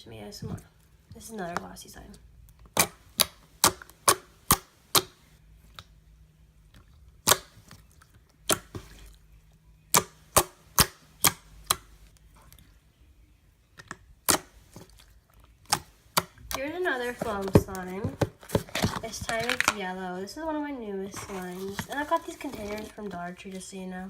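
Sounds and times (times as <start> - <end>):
slime clicking and popping: 7.1 - 8.8, 13.8 - 16.6.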